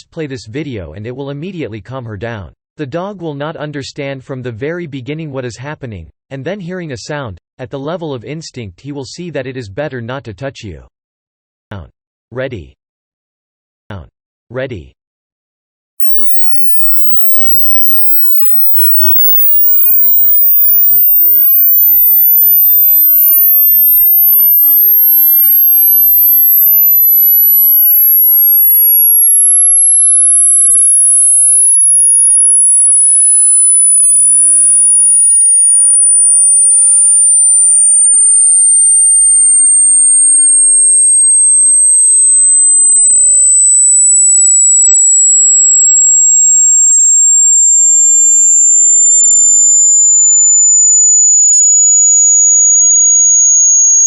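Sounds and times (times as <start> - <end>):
electronic tone sweeping down: 16.0 - 54.0.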